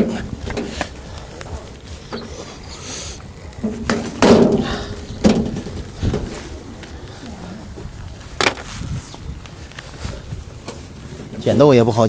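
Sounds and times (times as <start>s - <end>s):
sharp knocks and thuds of handling: 3.6s - 7.0s.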